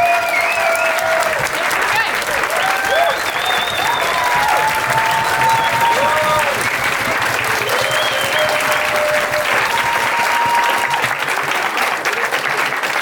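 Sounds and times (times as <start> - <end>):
long whoops: 0.0 - 11.3
audience applauding: 0.0 - 13.0.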